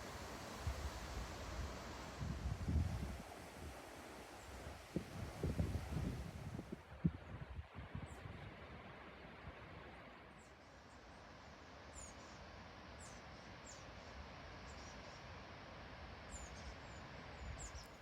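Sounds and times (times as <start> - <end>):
low rush of wind: 0.0 - 18.0.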